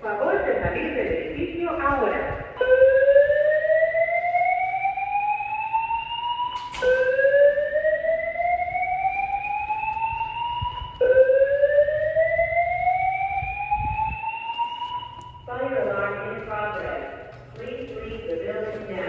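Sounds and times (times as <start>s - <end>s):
fire alarm slow whoop tone: 2.5s - 15.5s.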